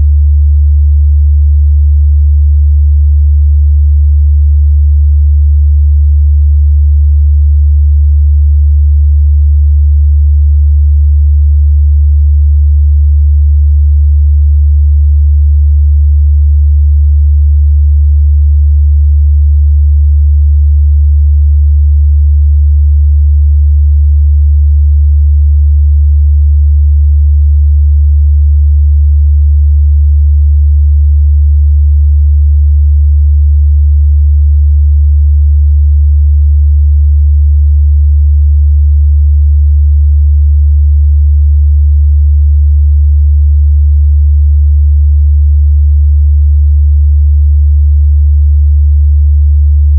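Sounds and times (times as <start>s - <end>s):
low sine-wave test tone: 0.0s - 36.9s, 38.2s - 40.4s, 49.7s - 49.9s.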